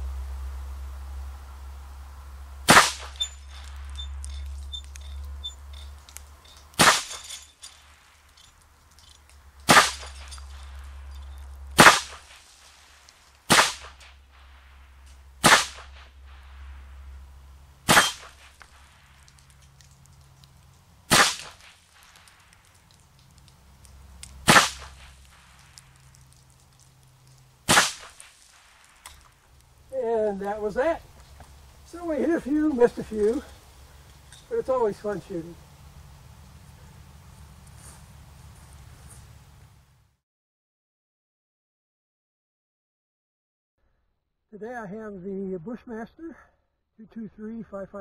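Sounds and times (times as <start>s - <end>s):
rifle shots: 2.6s - 4.1s, 6.8s - 7.9s, 9.7s - 10.7s, 11.8s - 12.4s, 13.5s - 14.1s, 15.4s - 16.1s, 17.8s - 18.9s, 21.1s - 22.1s, 24.4s - 25.2s, 27.6s - 28.9s.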